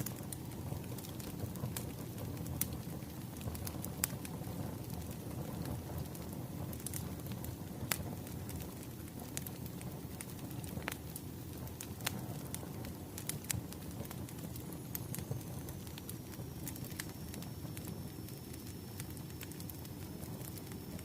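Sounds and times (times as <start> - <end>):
firewood crackling and popping: 0.0 - 21.0
faint high whine: 14.2 - 21.0.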